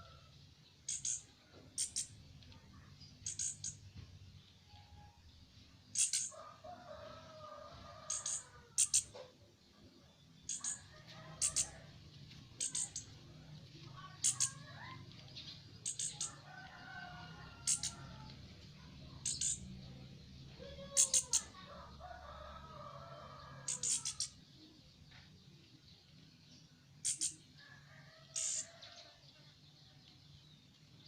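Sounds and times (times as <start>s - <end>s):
faint wavering bird calls: 0.0s - 4.0s, 5.9s - 13.2s, 13.8s - 18.4s, 19.0s - 25.2s, 27.0s - 30.0s
bird chick high-pitched calls: 5.9s - 9.3s, 10.4s - 12.0s, 12.6s - 13.1s, 13.9s - 15.2s, 15.8s - 18.4s, 19.2s - 19.7s, 20.5s - 24.7s, 27.0s - 27.6s, 28.2s - 29.2s.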